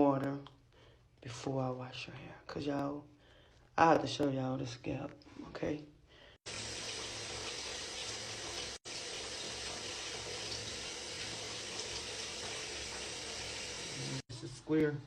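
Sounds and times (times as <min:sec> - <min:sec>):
water running from sink tap: 0:06.5 - 0:14.3.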